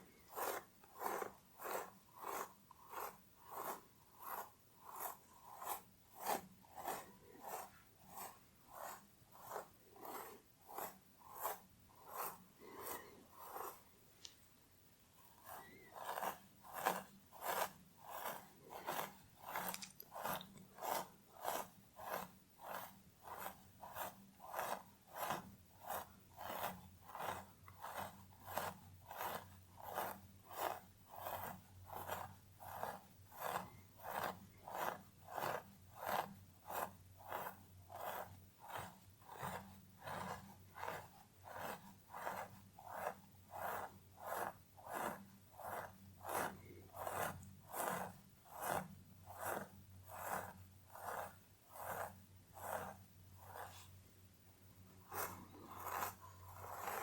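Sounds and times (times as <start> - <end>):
scratching through hair: 15.3 - 36.2, 55.0 - 57.0.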